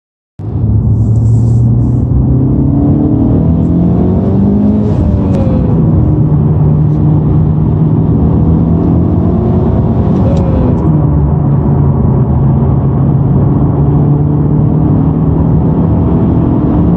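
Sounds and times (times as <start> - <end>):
car engine buzzing drone: 0.4 - 16.9.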